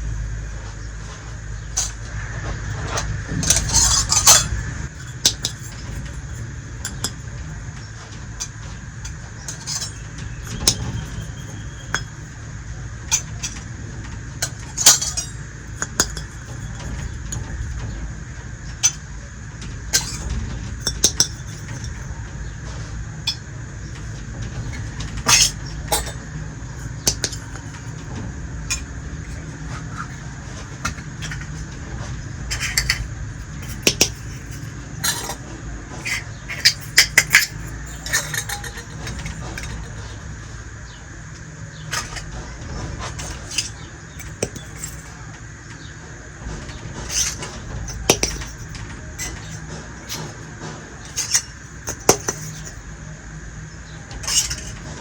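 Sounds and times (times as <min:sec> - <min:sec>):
steady low hum: 0:00.0 - 0:55.0
toy kitchenware clicking: 0:02.9 - 0:07.2, 0:08.4 - 0:12.3, 0:14.4 - 0:17.6, 0:20.0 - 0:22.1, 0:23.3 - 0:28.1, 0:28.7 - 0:31.7, 0:32.5 - 0:40.6, 0:43.0 - 0:45.2, 0:47.0 - 0:52.9, 0:54.2 - 0:54.9.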